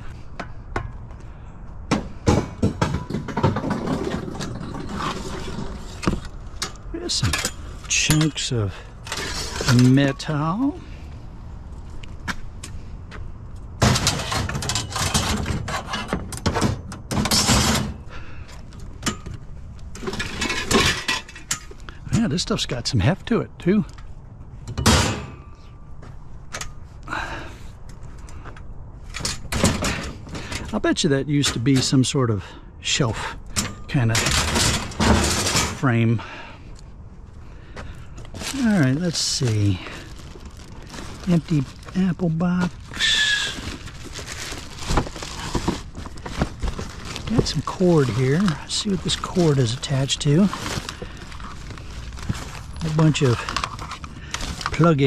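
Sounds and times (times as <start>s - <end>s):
junk knocking and clattering: 1.8s - 8.3s, 13.8s - 18.0s, 33.5s - 36.0s
scrap metal clanging: 2.0s - 10.3s, 13.8s - 18.0s, 20.0s - 21.7s, 33.5s - 36.1s
metal scraping: 9.0s - 10.3s.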